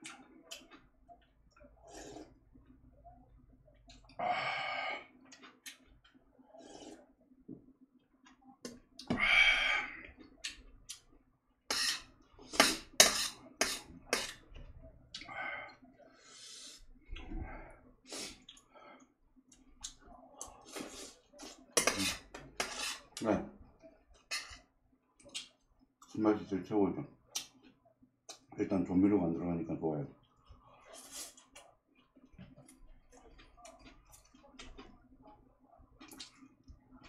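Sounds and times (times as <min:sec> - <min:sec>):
eating noises: 0:00.0 - 0:07.4, 0:18.0 - 0:26.2, 0:27.3 - 0:28.5, 0:30.2 - 0:37.0.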